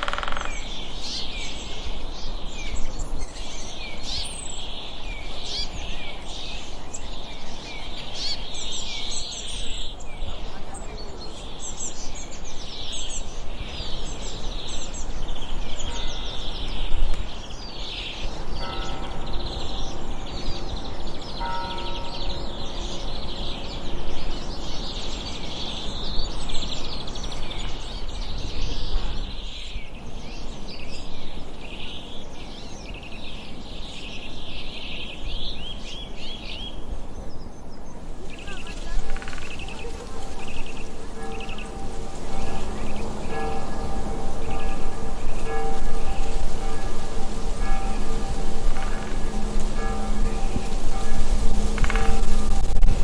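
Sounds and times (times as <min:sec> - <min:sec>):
flock of birds chirping: 0:00.0 - 0:53.0
low rumble: 0:39.4 - 0:53.0.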